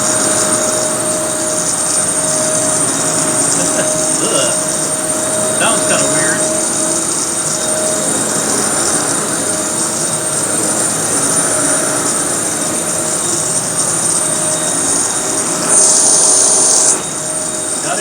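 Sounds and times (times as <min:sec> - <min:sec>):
vacuum cleaner whining: 0:00.0 - 0:18.0.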